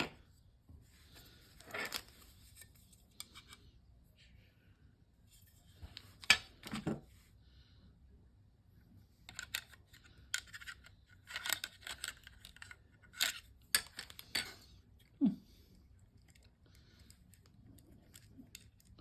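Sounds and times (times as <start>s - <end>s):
plastic parts clicking: 9.3s - 14.5s.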